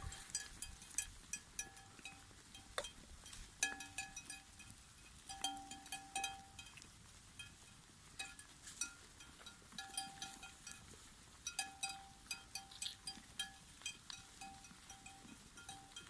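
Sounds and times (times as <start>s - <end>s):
sheep bells clinking: 0.0s - 16.0s.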